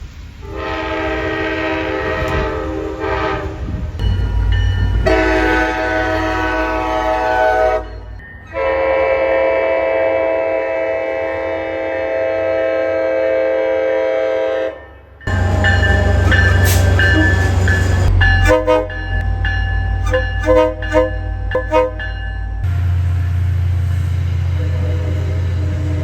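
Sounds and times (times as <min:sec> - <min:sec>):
locomotive air horn blasts: 0:00.4 - 0:03.8, 0:05.0 - 0:19.3, 0:20.0 - 0:22.4, 0:24.5 - 0:26.0
deep rumble: 0:15.3 - 0:26.0.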